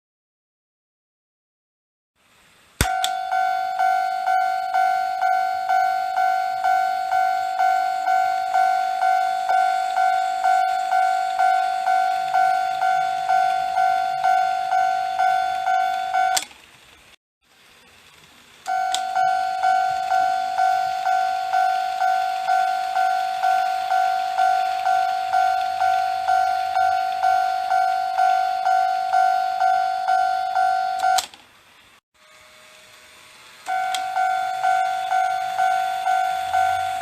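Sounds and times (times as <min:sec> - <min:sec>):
switch clicks: 0:02.8 - 0:03.2, 0:33.7 - 0:34.2
electronic crossing warning bell: 0:02.8 - 0:16.4, 0:18.7 - 0:31.3, 0:33.7 - 0:37.0.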